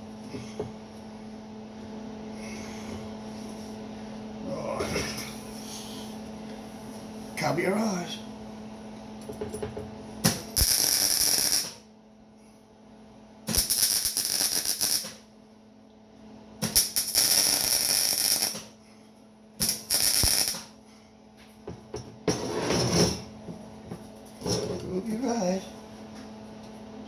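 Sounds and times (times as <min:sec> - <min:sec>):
steady low hum: 0:00.0 - 0:27.0
crackling welding arc: 0:10.2 - 0:11.8, 0:13.5 - 0:15.2, 0:16.6 - 0:18.7, 0:19.6 - 0:20.8.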